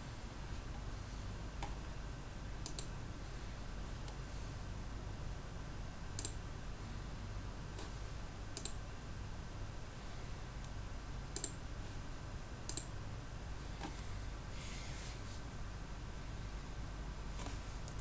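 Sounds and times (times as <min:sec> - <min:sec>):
steady low hum: 0:00.0 - 0:18.0
computer mouse clicking: 0:02.6 - 0:02.9, 0:06.2 - 0:06.4, 0:08.6 - 0:08.8, 0:11.4 - 0:11.6, 0:12.7 - 0:12.9, 0:17.4 - 0:18.0.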